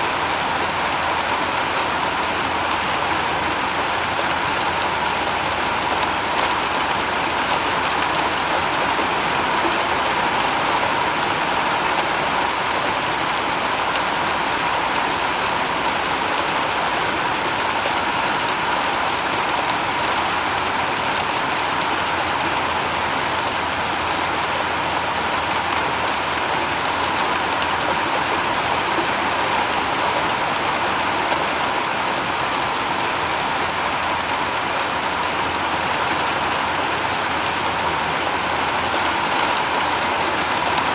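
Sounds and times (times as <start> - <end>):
rain on a shingled roof: 0.0 - 40.9.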